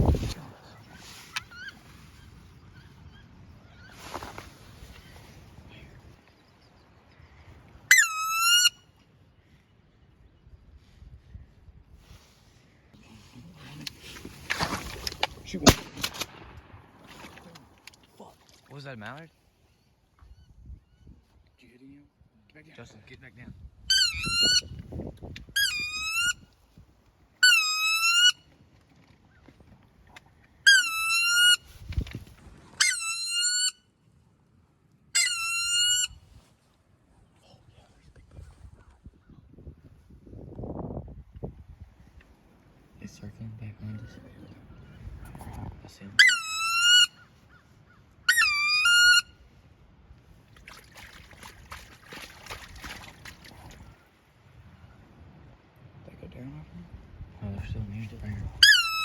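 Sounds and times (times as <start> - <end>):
waterfowl honking call: 7.9 - 8.8, 27.4 - 28.5, 30.7 - 31.7, 32.8 - 33.8, 35.2 - 36.2, 46.2 - 49.4, 58.6 - 59.0
goose-like honking calls: 46.2 - 47.2, 48.3 - 49.3
splashy rustle in water: 50.4 - 54.0.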